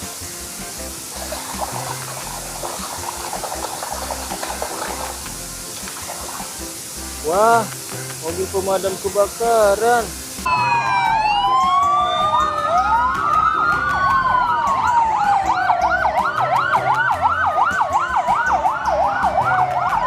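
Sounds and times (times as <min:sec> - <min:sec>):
fast yelping siren warble: 0:10.5 - 0:20.0
fire engine sirens wailing: 0:10.5 - 0:20.0.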